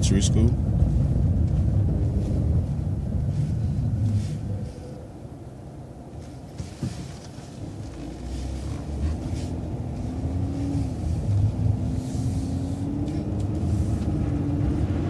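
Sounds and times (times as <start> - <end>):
bus engine rumble: 0.0 - 15.0.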